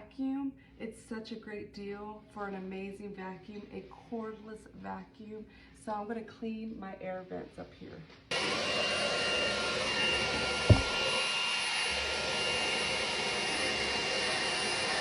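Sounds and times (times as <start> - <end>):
handheld vacuum cleaner whining: 8.3 - 15.0
sharp knock: 10.7 - 11.1.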